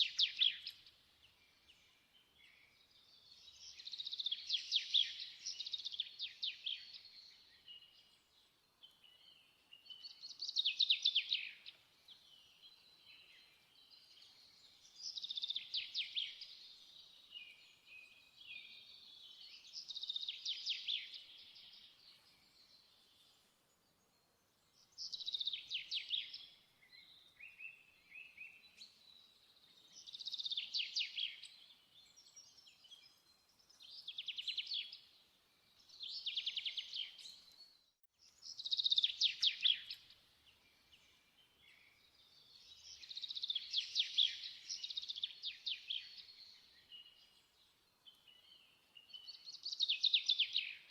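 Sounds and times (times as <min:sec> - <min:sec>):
soft bird chirps: 0:00.0 - 0:50.9.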